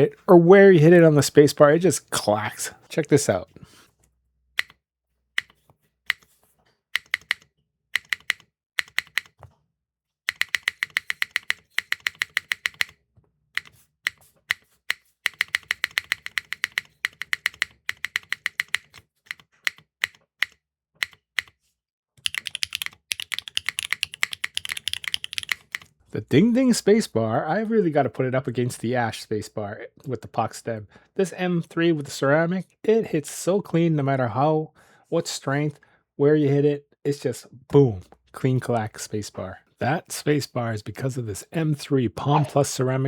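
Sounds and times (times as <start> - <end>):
mechanical keyboard clacking: 7.0 - 7.4, 8.0 - 9.4, 10.3 - 13.0, 15.3 - 21.5, 22.2 - 25.9.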